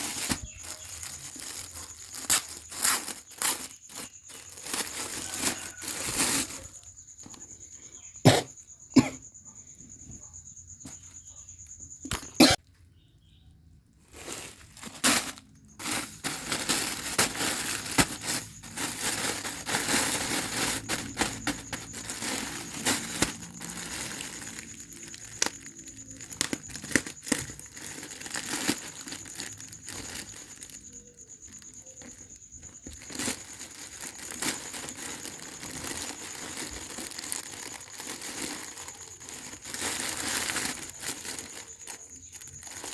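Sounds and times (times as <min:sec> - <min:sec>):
packaging tearing: 0:00.0 - 0:06.6, 0:14.4 - 0:30.7
packaging crinkling and rustling: 0:00.0 - 0:06.9, 0:14.1 - 0:42.9.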